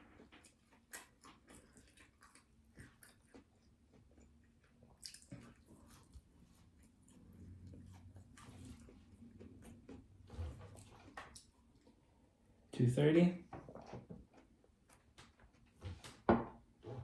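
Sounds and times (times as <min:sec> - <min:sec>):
wet chewing and mouth clicks: 0:00.0 - 0:12.1.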